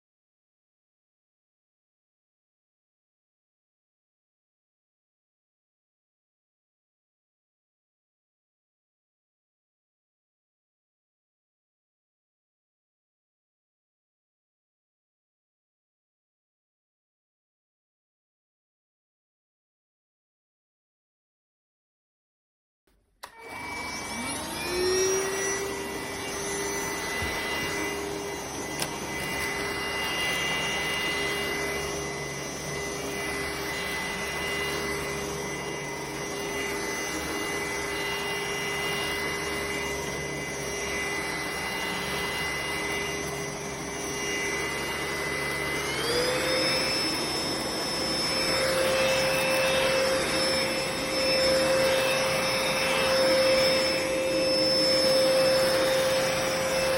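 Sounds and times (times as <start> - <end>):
vacuum motor whining: 23.2 - 56.9.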